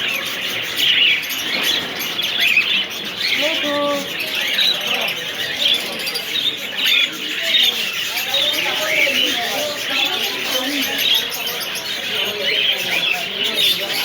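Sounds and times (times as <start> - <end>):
caged birds chirping: 0.0 - 14.0.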